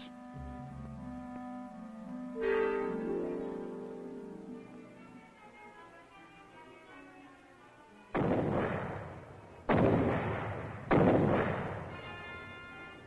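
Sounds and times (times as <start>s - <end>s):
grenade explosions: 8.2s - 13.0s.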